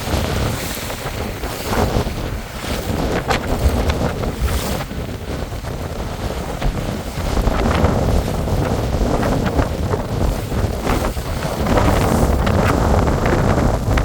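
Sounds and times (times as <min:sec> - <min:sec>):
waves slapping and splashing: 0:00.0 - 0:14.0
wind buffeting microphone: 0:00.0 - 0:14.0.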